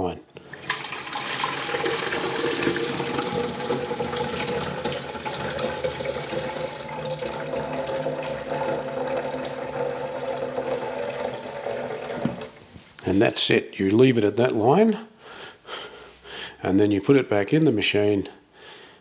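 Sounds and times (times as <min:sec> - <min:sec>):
water running into a tank: 0:00.4 - 0:12.8.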